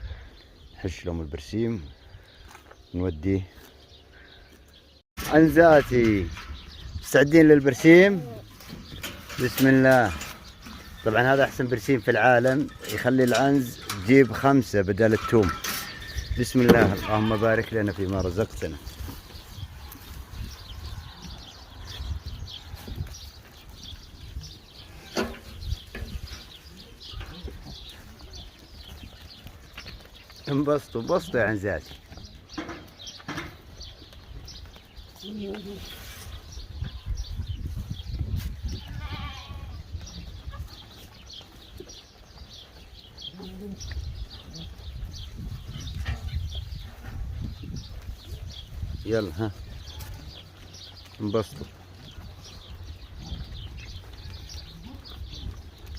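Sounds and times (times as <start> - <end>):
goats chewing and rustling fodder: 2.1 - 55.9
goat bleating: 16.6 - 17.8, 38.7 - 40.0.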